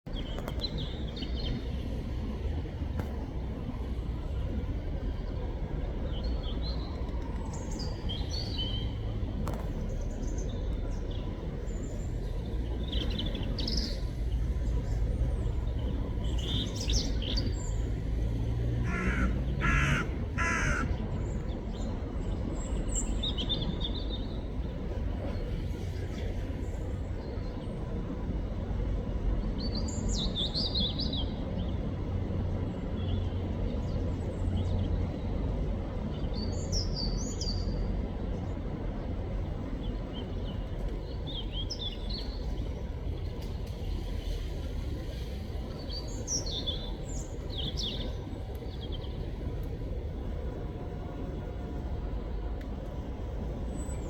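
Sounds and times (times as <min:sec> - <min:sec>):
low background rumble: 0:00.1 - 0:54.0
bird giving lower calls: 0:18.8 - 0:21.0
robin singing: 0:18.8 - 0:21.0.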